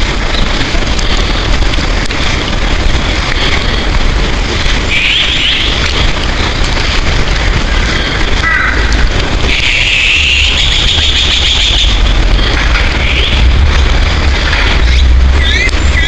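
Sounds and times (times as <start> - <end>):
loud steady rushing noise: 0.0 - 16.0
birds chirping: 4.9 - 6.9, 7.8 - 16.0.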